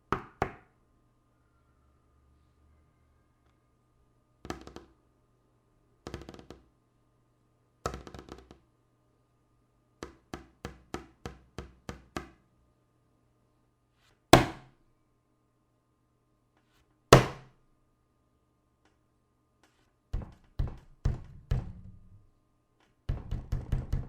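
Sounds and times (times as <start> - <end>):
loud thump on a table: 14.4 - 14.7, 17.1 - 17.5.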